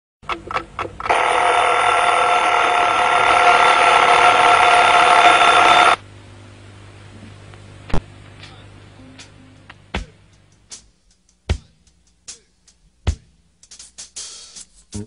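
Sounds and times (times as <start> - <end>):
loud alarm ringing: 1.1 - 6.0.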